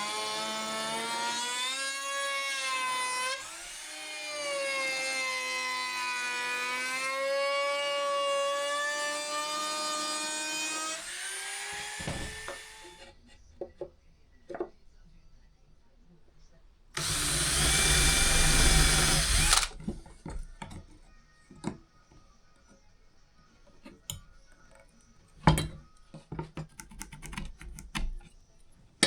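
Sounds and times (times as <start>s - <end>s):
power tool whining: 9.2s - 13.1s, 17.0s - 19.8s.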